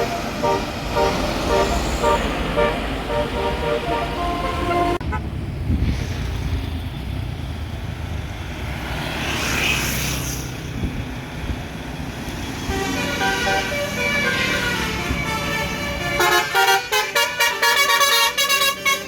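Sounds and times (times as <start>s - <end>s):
multi-tone bus horn melody: 0.0s - 5.3s, 12.6s - 19.0s
bus engine: 0.0s - 19.0s
traffic rumble: 0.0s - 19.0s.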